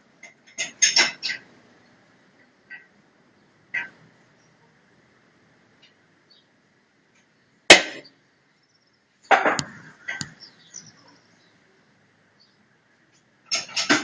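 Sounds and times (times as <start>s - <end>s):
sharp knocks: 9.3s - 10.4s.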